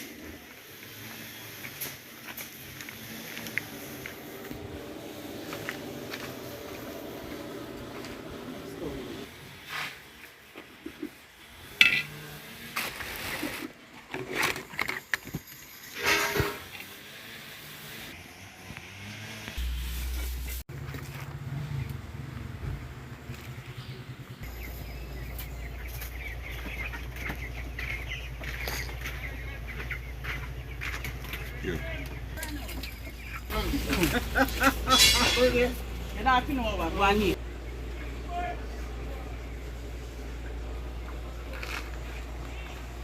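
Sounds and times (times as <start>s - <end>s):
chickens clucking: 24.4s - 43.0s
dishes and utensils clinking: 34.7s - 35.7s.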